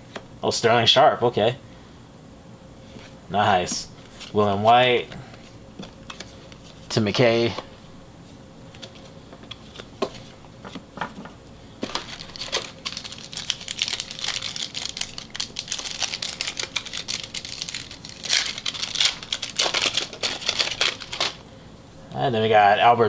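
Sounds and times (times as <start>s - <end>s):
cards clicking: 11.8s - 21.4s
wrapper tearing and crinkling: 11.8s - 21.4s.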